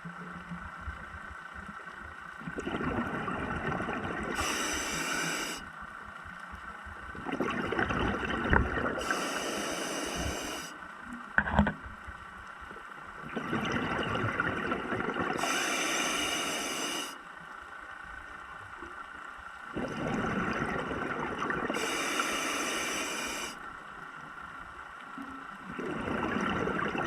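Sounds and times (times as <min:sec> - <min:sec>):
exhaust bubbles gushing: 0:02.4 - 0:05.6, 0:07.2 - 0:10.6, 0:13.2 - 0:17.0, 0:19.8 - 0:23.6, 0:25.7 - 0:27.0
regulator breathing hiss: 0:04.3 - 0:05.7, 0:09.0 - 0:10.8, 0:15.4 - 0:17.2, 0:21.7 - 0:23.6.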